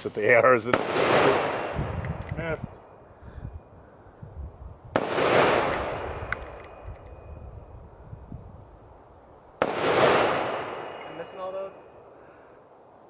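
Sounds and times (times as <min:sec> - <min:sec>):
rifle shot with rolling echo: 0:00.6 - 0:01.9, 0:04.9 - 0:06.9, 0:09.6 - 0:11.9.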